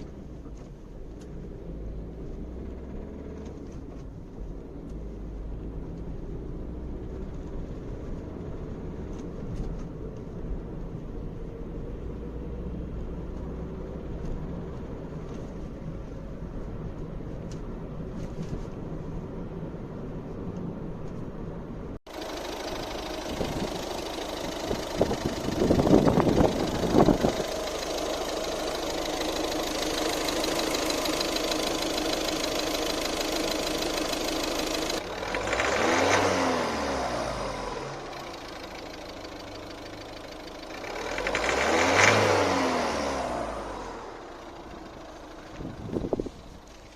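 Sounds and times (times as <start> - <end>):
engine rattling when revved: 0.0 - 10.2, 22.1 - 46.9
diesel engine running: 22.1 - 46.9.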